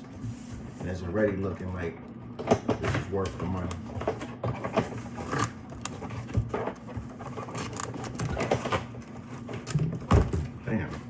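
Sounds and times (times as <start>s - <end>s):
cardboard scraping and rubbing: 3.0s - 10.1s.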